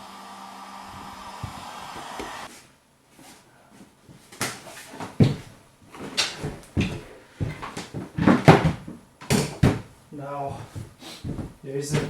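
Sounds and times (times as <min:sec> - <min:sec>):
tyre and wheel parts knocking: 0:05.2 - 0:12.0.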